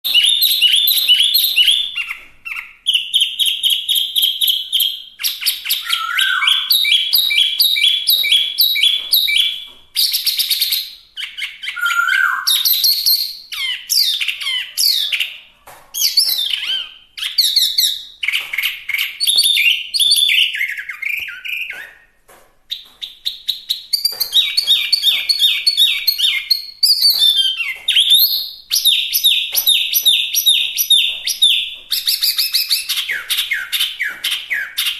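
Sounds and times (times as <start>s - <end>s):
songbird singing whistled trills: 0.0s - 15.4s, 22.7s - 34.9s.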